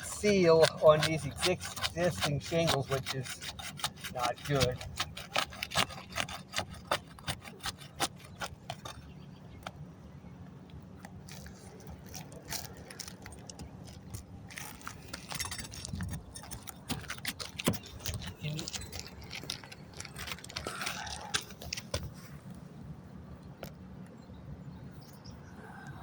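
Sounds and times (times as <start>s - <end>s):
shingles crackling and scraping: 0.0s - 9.8s, 11.0s - 22.7s.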